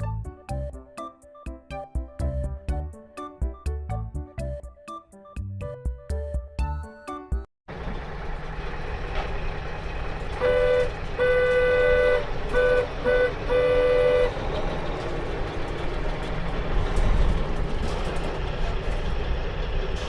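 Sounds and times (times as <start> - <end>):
engine rumble: 7.7 - 20.0
vehicle horn honking: 10.4 - 14.4.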